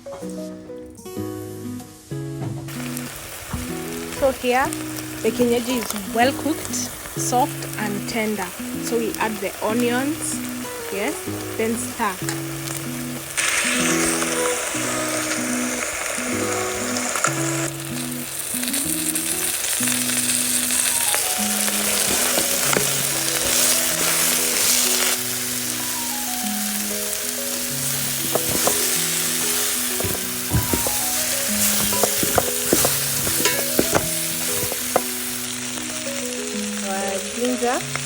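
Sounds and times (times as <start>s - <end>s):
onions sizzling in a pot: 0.1s - 38.0s
spoon scraping a pot: 21.8s - 24.9s, 28.2s - 35.1s.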